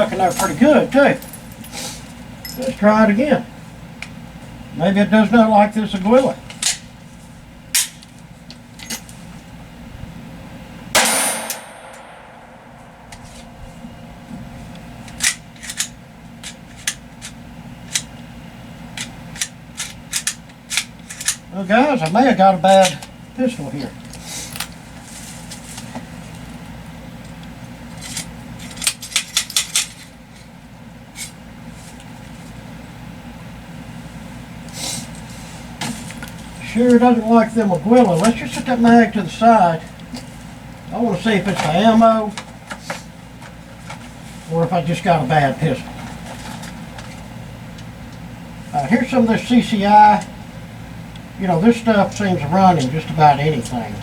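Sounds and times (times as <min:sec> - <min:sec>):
pistol shot: 0:11.0 - 0:12.6
steel target clanging: 0:11.0 - 0:13.6.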